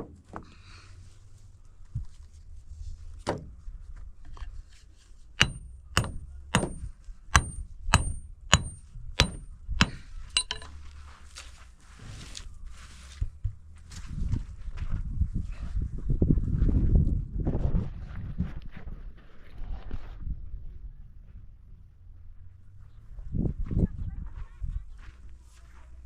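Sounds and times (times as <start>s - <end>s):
hammer striking nails into wood: 5.4s - 10.7s.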